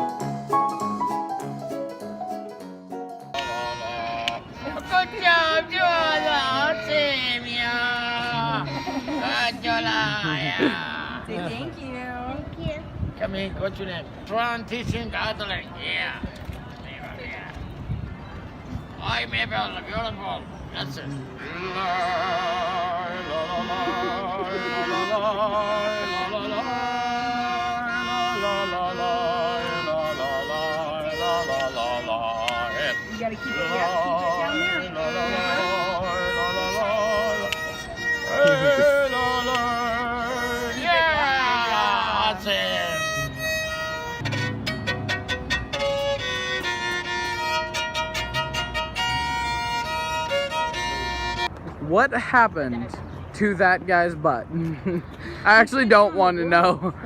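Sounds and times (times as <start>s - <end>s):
violin melody with vibrato: 3.4s - 10.4s, 21.4s - 51.5s.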